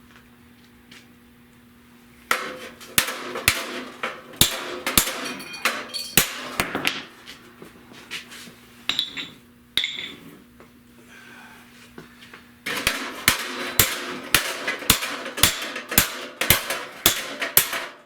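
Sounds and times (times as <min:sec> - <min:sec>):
hammer striking sheet metal: 0:02.3 - 0:07.1, 0:12.7 - 0:18.0.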